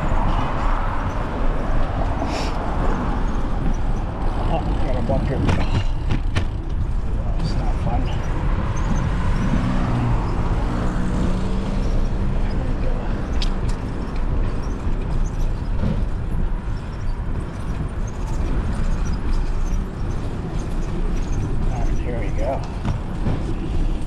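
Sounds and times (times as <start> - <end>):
road traffic passing: 0.0 - 24.0
vehicle engine droning: 0.0 - 24.0
wind rushing over microphone: 0.0 - 24.0.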